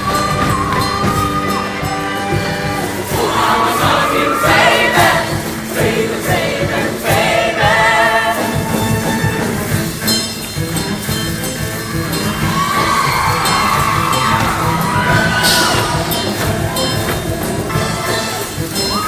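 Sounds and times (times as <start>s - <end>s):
accompaniment with steady beat: 0.0s - 19.0s
choir singing: 1.6s - 9.6s.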